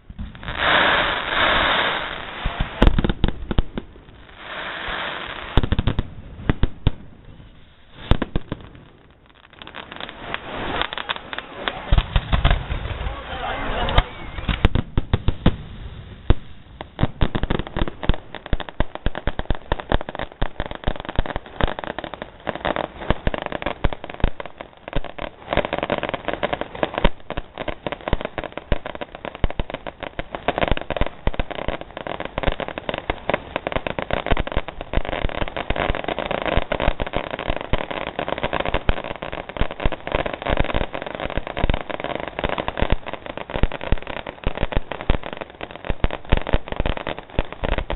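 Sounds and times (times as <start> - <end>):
fireworks crackling and banging: 0.0 - 47.9.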